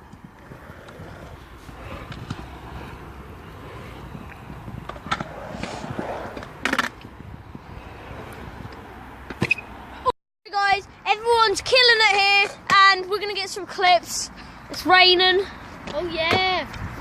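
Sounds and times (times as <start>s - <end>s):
wheels rolling on concrete: 0.0s - 10.1s.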